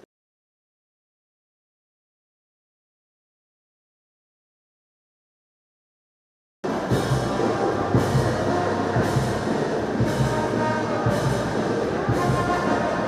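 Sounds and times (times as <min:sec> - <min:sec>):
orchestral music with drums: 0:06.7 - 0:13.0
sharp percussion hit: 0:06.7 - 0:13.0.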